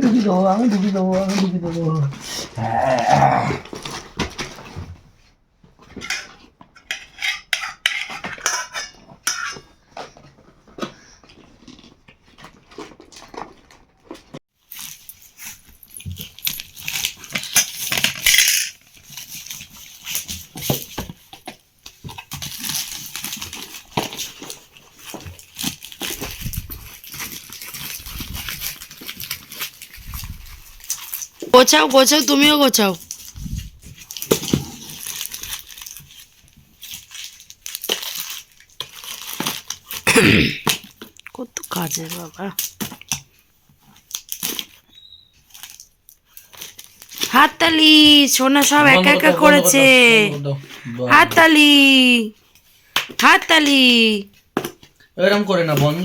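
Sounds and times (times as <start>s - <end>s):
rustling: 10.1s - 31.5s
small hard objects clattering: 14.6s - 21.0s.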